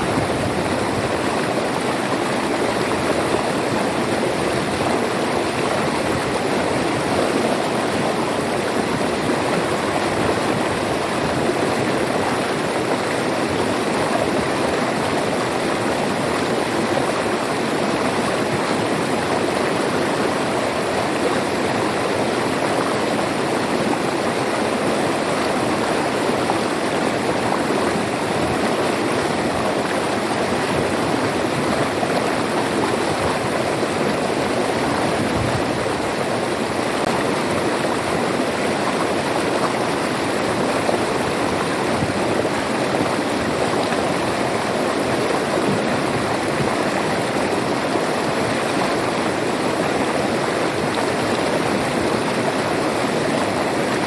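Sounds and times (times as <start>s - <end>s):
river water rushing over stones: 0.0s - 54.0s.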